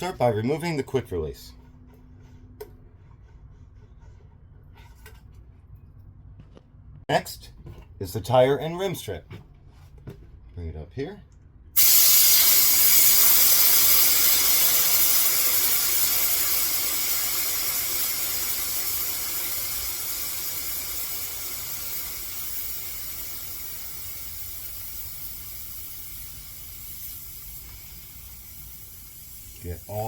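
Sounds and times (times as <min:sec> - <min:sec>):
air hissing from tire valve: 0:11.8 - 0:30.0.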